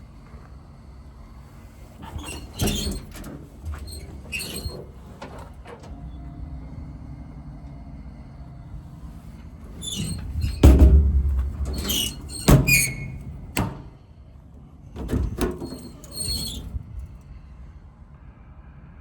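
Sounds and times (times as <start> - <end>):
metal door clunks: 9.7 - 14.0, 15.0 - 16.8
door hinge squeaks: 9.8 - 13.9, 15.1 - 16.8.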